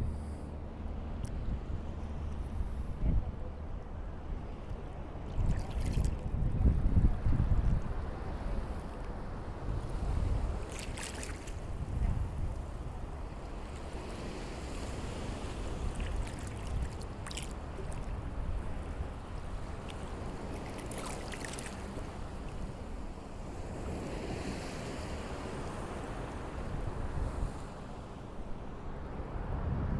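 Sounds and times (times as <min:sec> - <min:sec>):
wind rumbling on microphone: 0:00.0 - 0:29.9
sea waves washing: 0:08.0 - 0:28.4.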